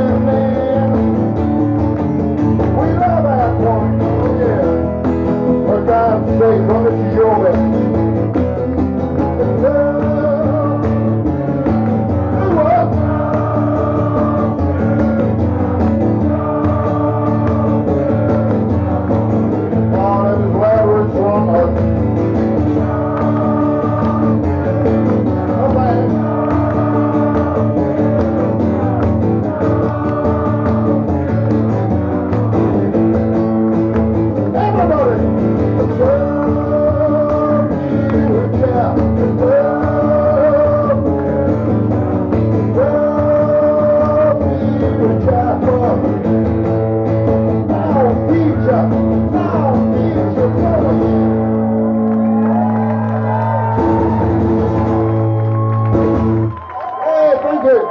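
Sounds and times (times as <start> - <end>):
live rock song on guitar: 0.0 - 57.0
person singing: 9.4 - 21.8, 22.6 - 33.2, 34.5 - 41.7, 42.6 - 46.1.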